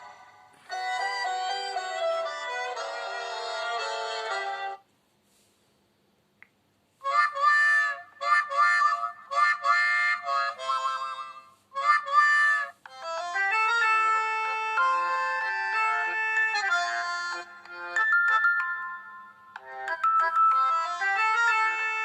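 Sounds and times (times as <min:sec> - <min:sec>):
rhythmic tune of short chords: 0:00.0 - 0:04.8, 0:07.0 - 0:22.0
phone ringtones: 0:17.3 - 0:21.3.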